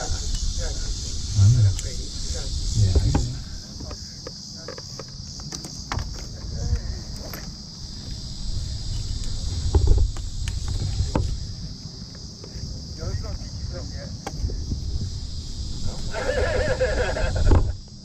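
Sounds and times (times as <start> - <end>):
insects chirring: 0.0 - 18.0
low rumble: 1.2 - 2.0, 2.6 - 3.7.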